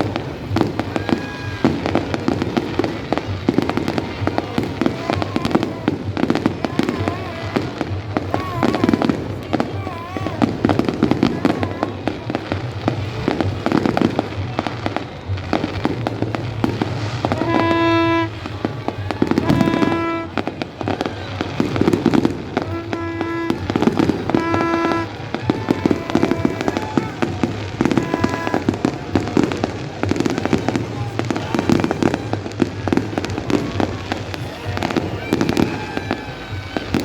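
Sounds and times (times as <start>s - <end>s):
fireworks crackling and popping: 0.0s - 37.0s
music with long held notes: 0.0s - 37.0s.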